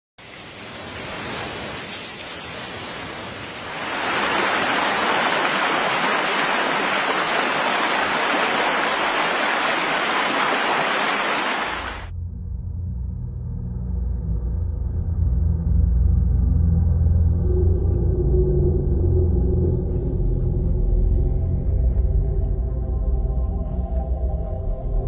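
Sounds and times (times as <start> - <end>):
hiss of rushing water: 0.2 - 12.1.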